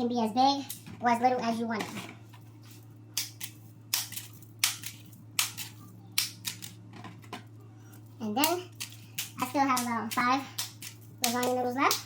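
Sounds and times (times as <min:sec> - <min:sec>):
dry noodles snapping: 0:03.1 - 0:06.8, 0:08.4 - 0:12.0.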